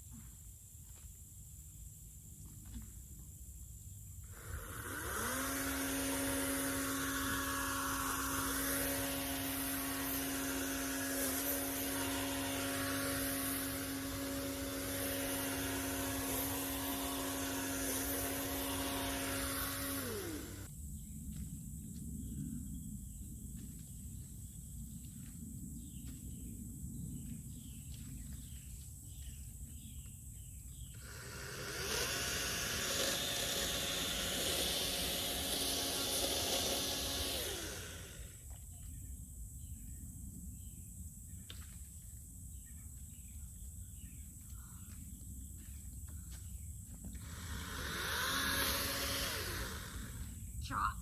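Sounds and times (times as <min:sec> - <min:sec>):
outdoor background: 0:00.0 - 0:51.0
chainsaw running: 0:04.2 - 0:20.7, 0:30.9 - 0:38.6, 0:47.0 - 0:50.9.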